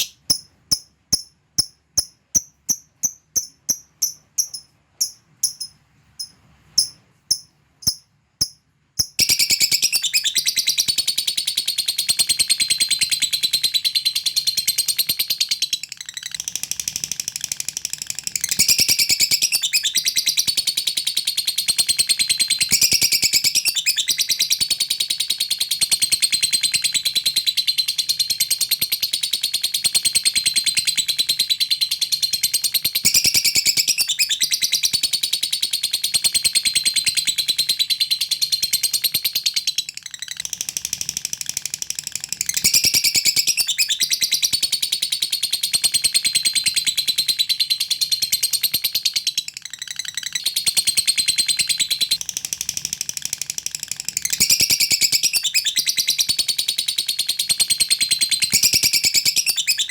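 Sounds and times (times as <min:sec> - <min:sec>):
lovebird chattering trill: 0:00.0 - 0:11.2.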